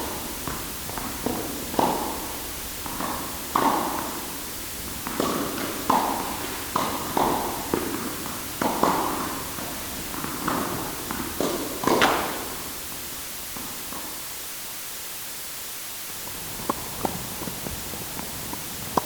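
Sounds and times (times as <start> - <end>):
echoing ball hits: 0.0 - 14.1
background hiss: 0.0 - 19.0.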